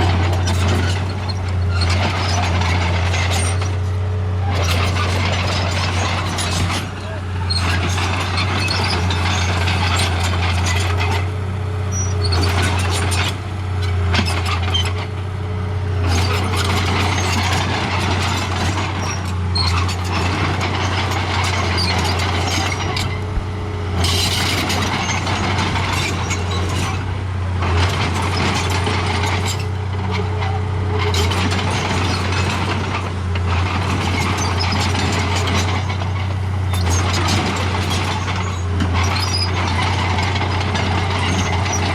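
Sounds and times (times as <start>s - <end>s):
model bulldozer motor and tracks: 0.0s - 41.9s
constant low hum: 21.4s - 28.0s.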